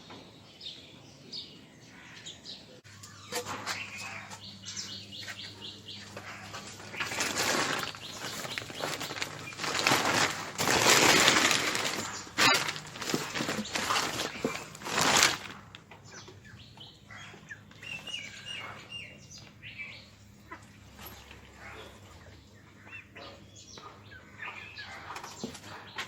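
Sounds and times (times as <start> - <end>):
chickens chirping: 2.2 - 26.0
loud rustle: 6.6 - 15.8.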